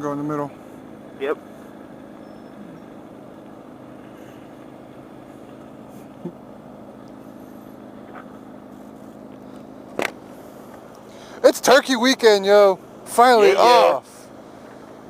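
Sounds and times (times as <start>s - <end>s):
muffled motorcycle engine: 0.0s - 15.0s.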